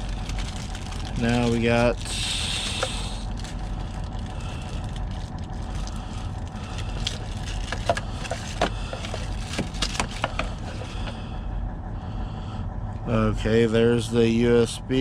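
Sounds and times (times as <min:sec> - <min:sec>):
hands handling packaging clicks: 0:00.0 - 0:11.2
low engine hum: 0:00.0 - 0:15.0.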